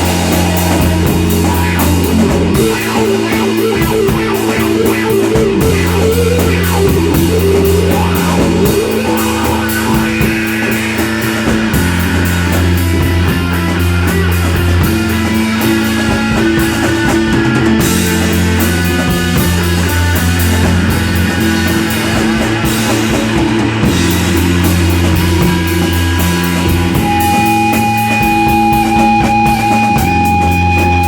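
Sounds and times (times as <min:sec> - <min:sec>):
rock band playing live: 0:00.0 - 0:31.0
long held high note: 0:26.9 - 0:31.0.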